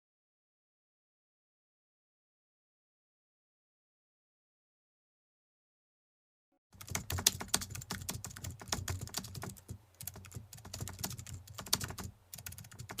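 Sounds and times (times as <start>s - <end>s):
rapid light clicks and taps: 6.8s - 13.0s.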